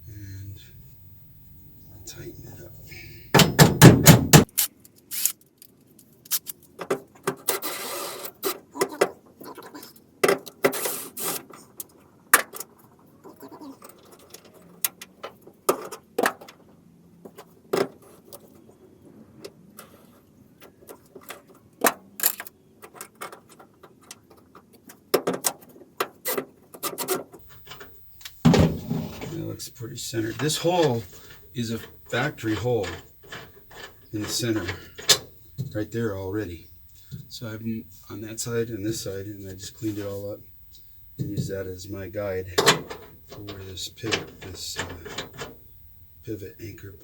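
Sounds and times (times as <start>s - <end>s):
metal clicks knocks and scrapes: 26.3s - 29.5s, 30.3s - 36.0s, 42.6s - 45.7s.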